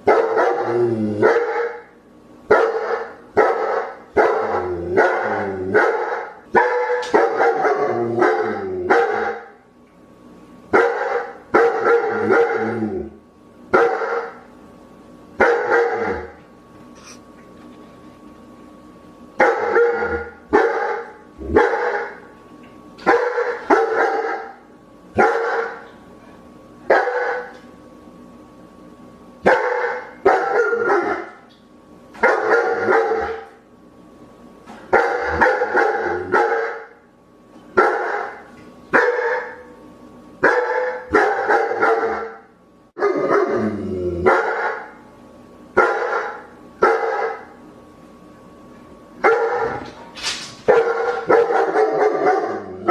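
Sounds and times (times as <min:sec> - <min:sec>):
dog barking: 0:00.0 - 0:01.9, 0:02.5 - 0:09.6, 0:10.7 - 0:12.7, 0:13.7 - 0:14.4, 0:15.4 - 0:16.3, 0:19.4 - 0:22.2, 0:23.0 - 0:24.6, 0:25.2 - 0:25.9, 0:26.9 - 0:27.5, 0:29.4 - 0:31.4, 0:32.2 - 0:33.5, 0:34.9 - 0:37.0, 0:37.8 - 0:39.7, 0:40.4 - 0:43.5, 0:44.3 - 0:45.0, 0:45.8 - 0:47.5, 0:49.2 - 0:49.9, 0:50.7 - 0:52.9.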